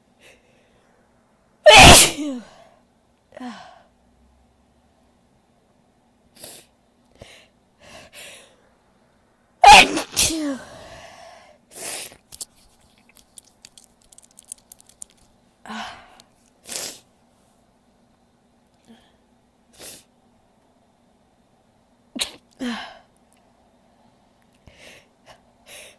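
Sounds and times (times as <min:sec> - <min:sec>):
woman sneezing loudly: 0:01.7 - 0:02.6, 0:09.6 - 0:10.7.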